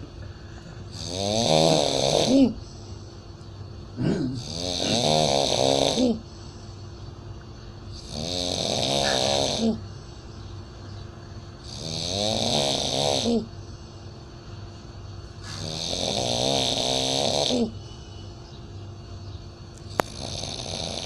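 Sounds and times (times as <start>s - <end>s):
person snoring: 0.9s - 2.6s, 4.0s - 6.2s, 8.0s - 9.8s, 11.6s - 13.5s, 15.4s - 17.8s, 20.0s - 21.0s.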